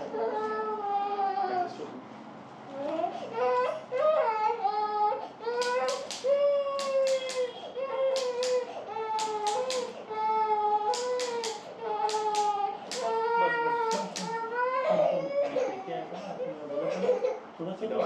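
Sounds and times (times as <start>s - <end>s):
young child crying: 2.8s - 15.9s.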